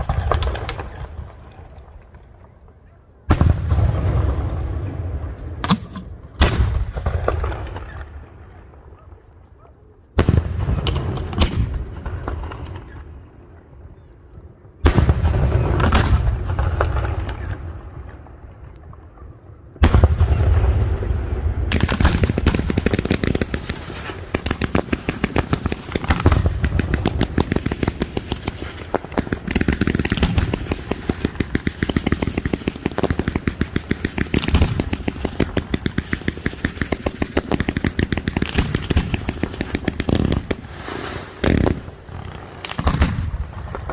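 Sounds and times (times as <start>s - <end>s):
rapid firework bangs and crackles: 0.0s - 4.8s, 14.8s - 18.3s, 19.8s - 43.9s
firework bursts with booms: 3.3s - 5.7s, 14.8s - 18.2s, 19.8s - 43.9s.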